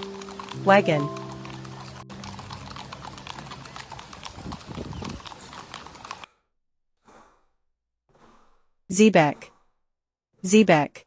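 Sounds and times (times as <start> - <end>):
horse hooves clip-clopping: 0.0 - 6.3.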